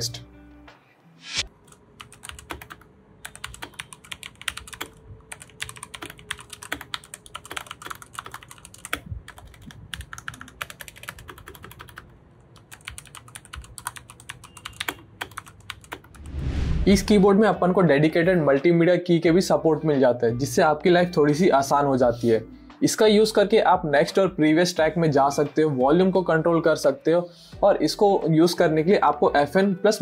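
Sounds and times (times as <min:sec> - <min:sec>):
mechanical keyboard typing: 0:01.6 - 0:16.2.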